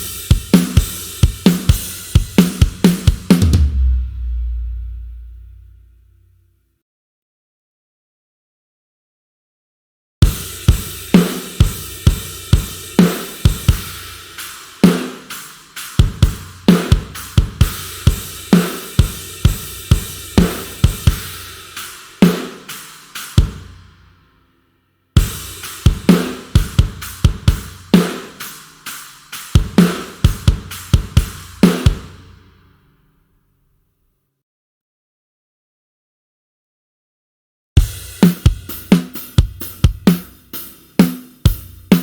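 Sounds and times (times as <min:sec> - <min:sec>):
rock drum kit groove: 0:00.0 - 0:05.2, 0:10.2 - 0:24.0, 0:25.2 - 0:32.5, 0:37.8 - 0:42.0.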